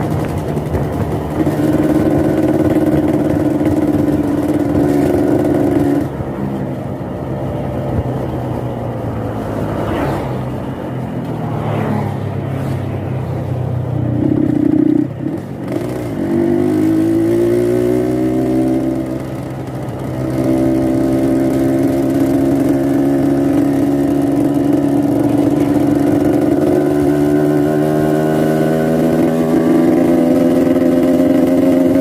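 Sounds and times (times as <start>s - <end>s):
two-stroke motorcycle engine revving: 0.0s - 6.4s, 13.9s - 32.0s.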